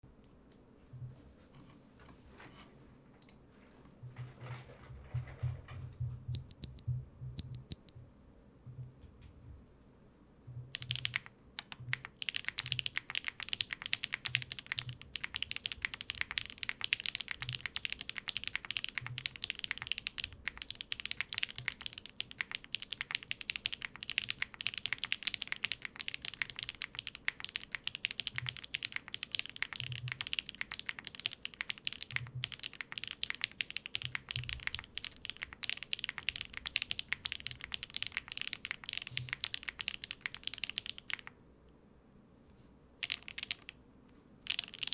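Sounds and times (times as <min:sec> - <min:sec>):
mechanical keyboard typing: 0:06.2 - 0:07.9, 0:10.7 - 0:41.4, 0:43.0 - 0:43.8, 0:44.4 - 0:44.9.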